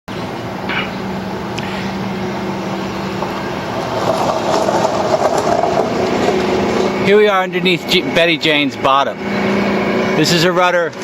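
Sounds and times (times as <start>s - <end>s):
mechanical hum: 0.1s - 11.0s.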